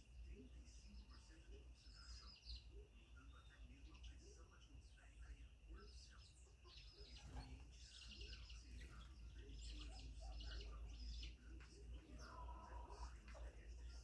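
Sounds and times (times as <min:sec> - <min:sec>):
birds chirping: 0:00.0 - 0:14.0
low steady hum: 0:00.0 - 0:14.0.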